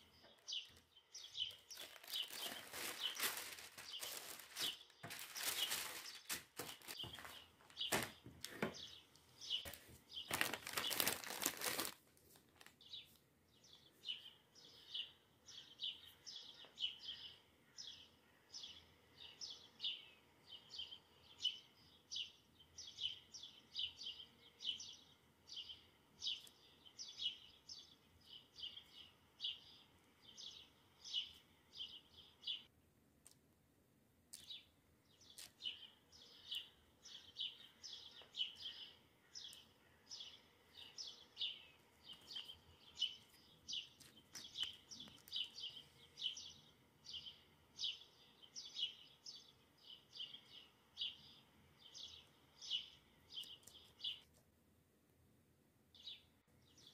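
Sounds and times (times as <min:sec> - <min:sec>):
small bird chirping: 0:00.0 - 0:12.0, 0:12.6 - 0:33.4, 0:34.3 - 0:54.3, 0:55.9 - 0:56.9
rustling or crinkling noise: 0:00.3 - 0:08.9, 0:09.5 - 0:13.3, 0:43.2 - 0:45.6.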